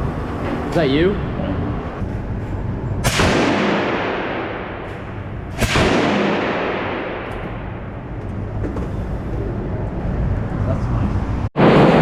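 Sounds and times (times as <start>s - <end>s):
echoing gunshots: 3.0s - 8.1s, 11.6s - 12.0s.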